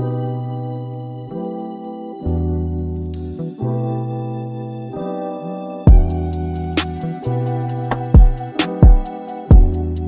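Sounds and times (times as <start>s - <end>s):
sustained instrumental notes: 0.0s - 10.0s
kick drum and hi-hat beat: 5.9s - 10.0s.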